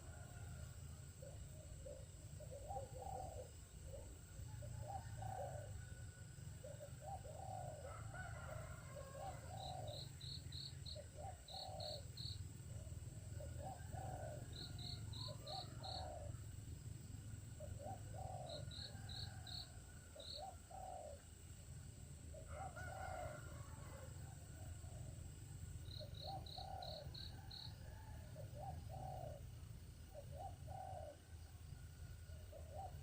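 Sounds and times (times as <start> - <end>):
high insect drone: 0.0 - 27.9
low mellow bird calls: 1.2 - 8.0, 9.0 - 16.5, 17.3 - 21.3, 25.8 - 33.0.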